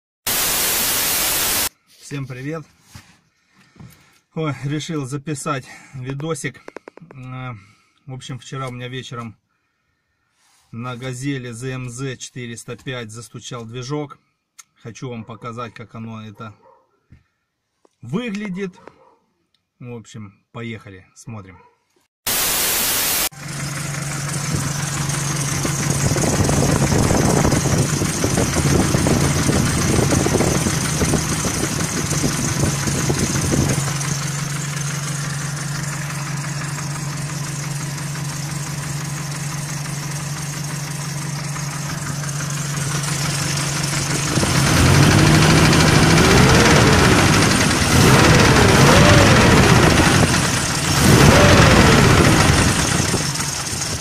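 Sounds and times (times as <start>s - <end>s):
knocking petrol engine revving: 23.4s - 54.0s.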